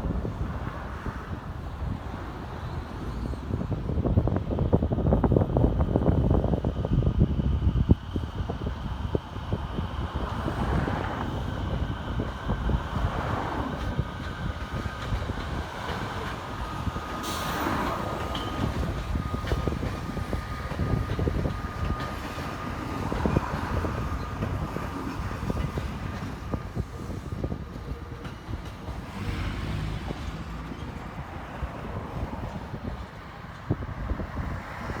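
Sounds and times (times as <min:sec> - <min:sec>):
train wheels clacking over rail joints: 0:13.1 - 0:33.7.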